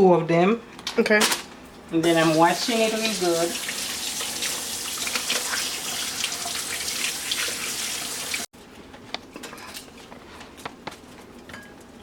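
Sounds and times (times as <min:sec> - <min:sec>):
kitchen tap running: 0:02.0 - 0:08.5.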